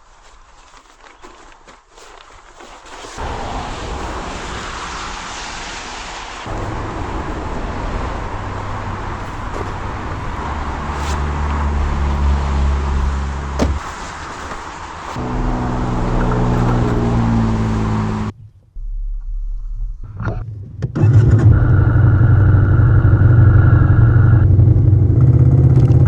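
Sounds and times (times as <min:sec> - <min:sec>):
steady rushing noise: 0:03.0 - 0:18.3
motorcycle engine running: 0:06.5 - 0:18.3, 0:21.2 - 0:26.0.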